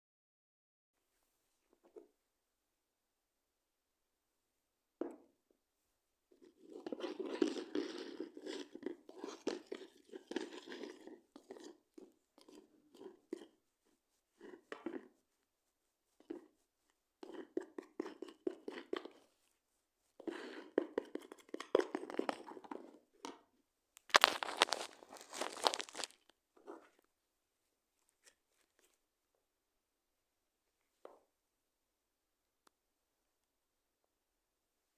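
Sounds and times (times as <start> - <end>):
slime being squished: 24.0 - 26.2.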